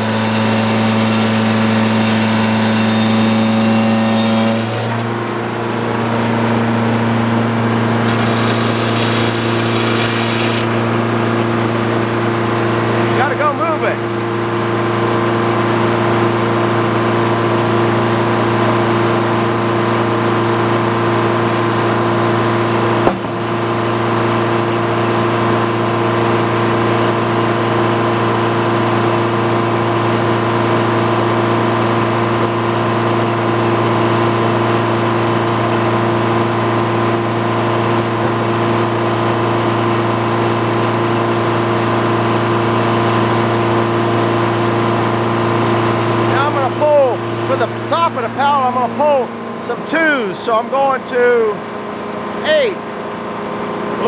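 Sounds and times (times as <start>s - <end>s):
sawmill engine running: 0.0s - 50.7s
sharp knock: 23.0s - 23.6s.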